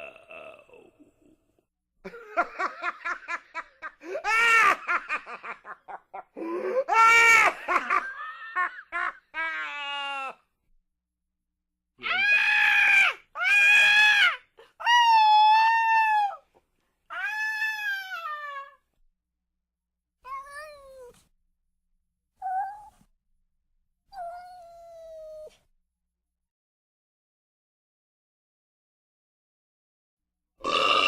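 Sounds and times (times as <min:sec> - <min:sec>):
cat meowing: 0:20.3 - 0:21.2.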